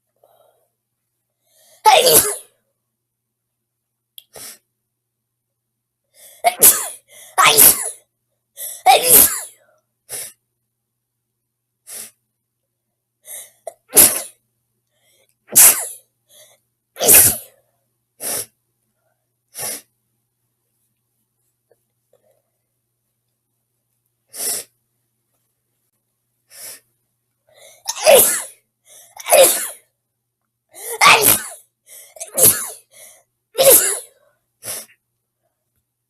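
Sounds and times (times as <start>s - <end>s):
person sneezing: 1.8s - 2.5s, 6.4s - 8.0s, 8.6s - 10.4s, 13.3s - 14.4s, 15.5s - 16.0s, 17.0s - 17.5s, 27.6s - 29.9s, 30.8s - 34.9s.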